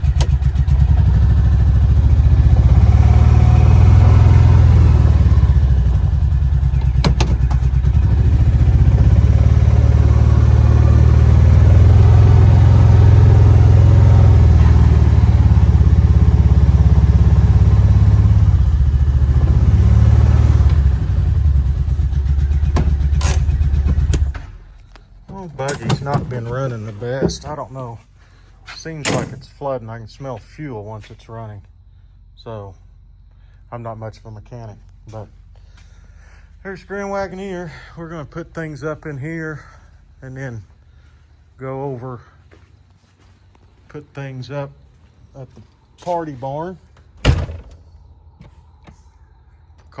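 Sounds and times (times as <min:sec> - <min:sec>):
buggy engine revving: 0:00.0 - 0:28.0.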